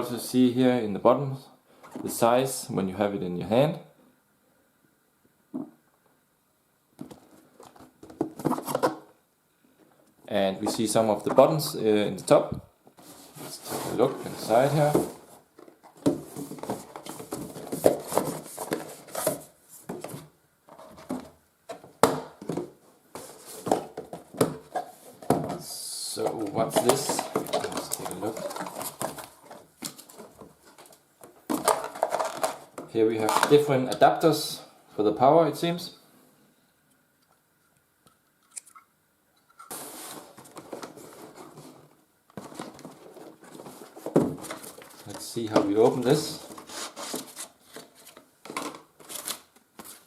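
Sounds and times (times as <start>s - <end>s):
cardboard box packaging rustling: 7.0s - 9.1s, 13.0s - 33.5s, 39.7s - 50.0s.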